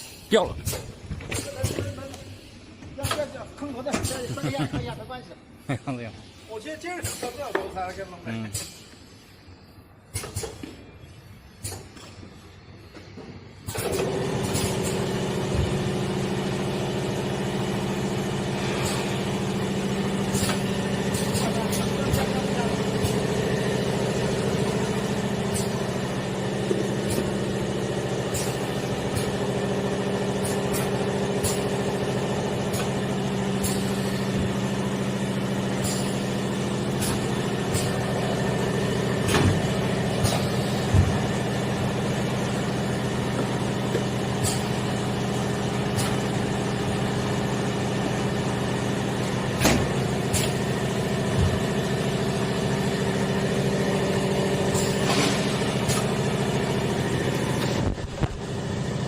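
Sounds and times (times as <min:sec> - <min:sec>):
welding machine humming: 0:13.8 - 0:59.0.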